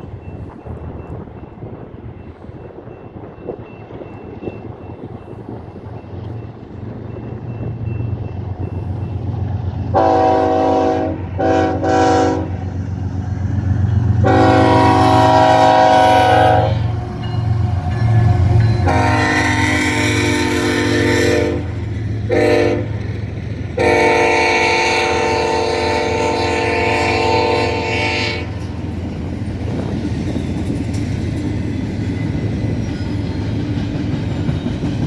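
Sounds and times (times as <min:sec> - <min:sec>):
wind noise: 0:00.0 - 0:10.0, 0:24.7 - 0:35.0
locomotive engines rumbling: 0:00.0 - 0:35.0
train air horn blasts: 0:09.9 - 0:12.7, 0:14.2 - 0:23.0, 0:23.8 - 0:28.6.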